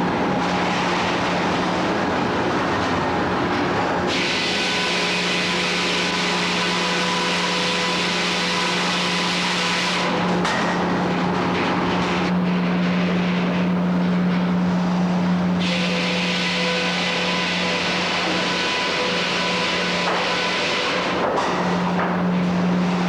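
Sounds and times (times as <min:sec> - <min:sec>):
sawmill hum: 0:00.0 - 0:23.0
circular saw cutting log: 0:15.6 - 0:21.2.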